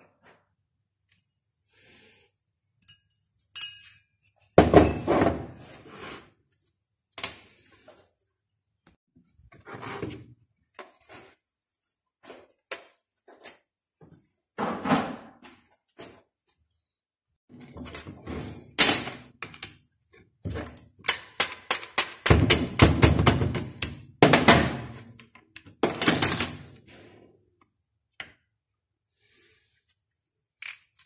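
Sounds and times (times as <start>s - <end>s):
metal tools clinking and clattering: 2.8s - 5.0s.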